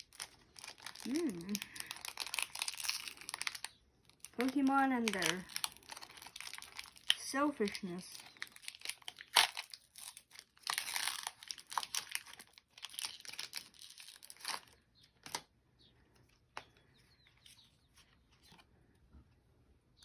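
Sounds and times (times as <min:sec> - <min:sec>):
foil wrapper crinkling and tearing: 0:00.0 - 0:15.5.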